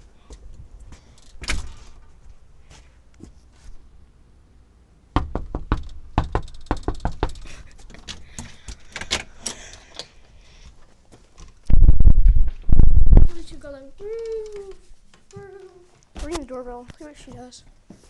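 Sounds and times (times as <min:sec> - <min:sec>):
knocking on a door: 0:05.2 - 0:07.4.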